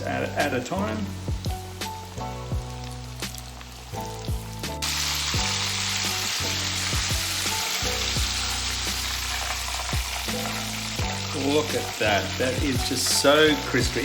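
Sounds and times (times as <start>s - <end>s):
chicken deep-frying in oil: 0.0s - 14.0s.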